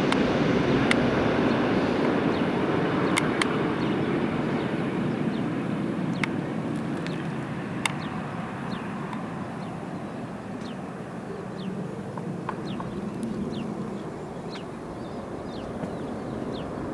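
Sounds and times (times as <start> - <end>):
jet engine rumble: 0.0 - 16.9
sharp clicks: 6.2 - 8.1.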